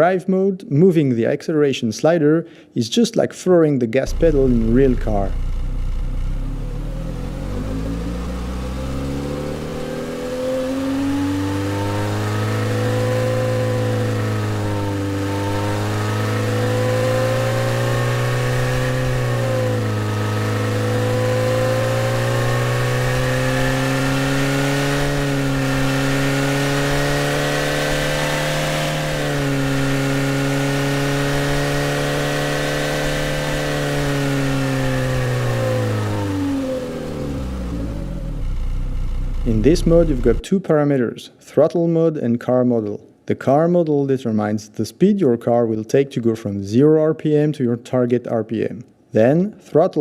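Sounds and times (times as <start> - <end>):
synthesized car engine revving: 4.0 - 40.4.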